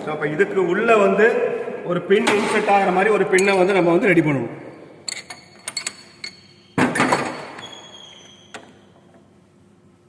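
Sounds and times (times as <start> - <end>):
metal parts knocking and clinking: 5.0 - 7.6.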